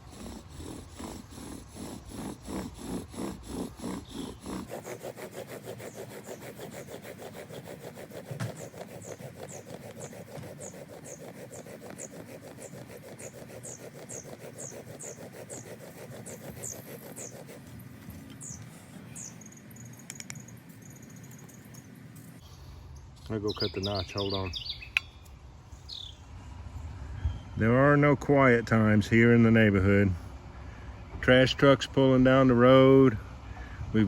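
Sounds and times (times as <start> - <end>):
wood rubbing on wood: 0.0 - 18.8.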